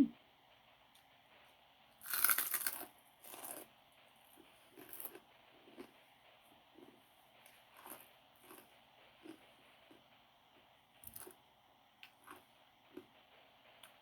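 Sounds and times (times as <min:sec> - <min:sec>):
soft chewing: 0:02.0 - 0:10.1, 0:12.0 - 0:13.2.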